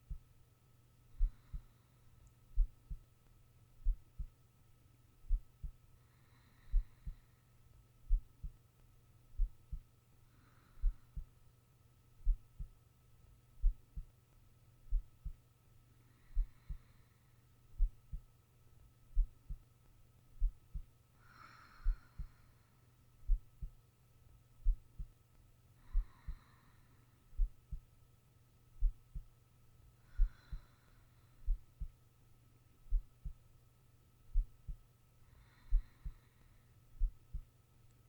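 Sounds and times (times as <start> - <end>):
soft slow breaths: 1.0 - 12.9, 14.8 - 28.1, 28.8 - 38.0
heartbeat low double thump: 2.6 - 3.0, 3.8 - 4.3, 5.2 - 5.8, 8.1 - 8.5, 9.4 - 9.8, 12.2 - 12.7, 13.6 - 14.0, 14.9 - 15.4, 17.8 - 18.2, 20.4 - 20.9, 23.3 - 23.8, 24.6 - 25.1, 27.4 - 27.8, 28.8 - 29.3, 31.5 - 31.9, 32.9 - 33.4, 34.3 - 34.8, 37.0 - 37.4.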